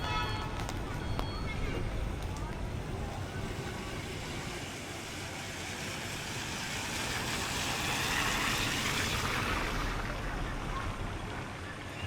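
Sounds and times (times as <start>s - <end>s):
tyres hissing on wet road: 2.7s - 11.6s.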